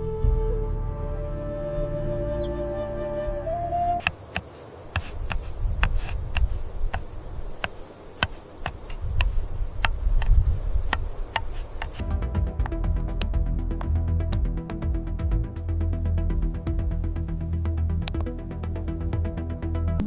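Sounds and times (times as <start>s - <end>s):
soft music: 0.0s - 4.1s, 11.4s - 20.0s
sharp clicks and crackles: 4.0s - 12.0s.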